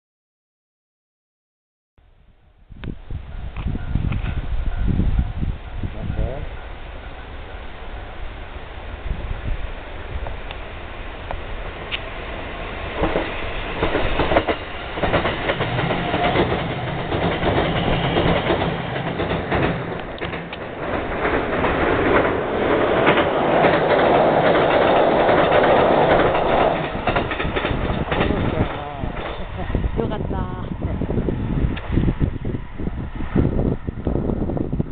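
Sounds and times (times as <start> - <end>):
train motor hum: 2.7 - 34.9
train wheels clacking over rail joints: 12.9 - 29.6.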